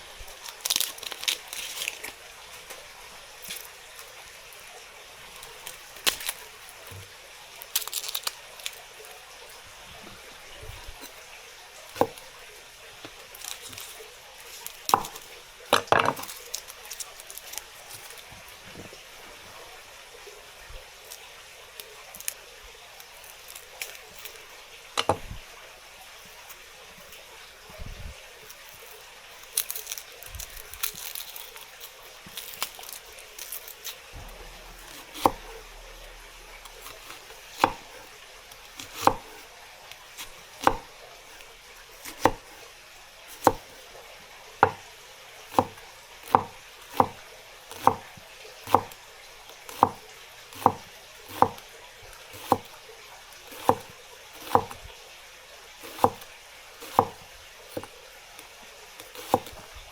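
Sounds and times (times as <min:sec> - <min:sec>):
knife chopping on cutting board: 0:14.9 - 0:16.3, 0:34.2 - 0:39.5, 0:40.2 - 0:40.9, 0:42.0 - 0:42.6, 0:43.4 - 0:43.7, 0:44.6 - 0:44.8, 0:45.5 - 0:48.0, 0:48.6 - 0:49.0, 0:49.7 - 0:51.6, 0:52.3 - 0:52.7, 0:53.5 - 0:54.8, 0:55.8 - 0:57.9, 0:59.0 - 0:59.6.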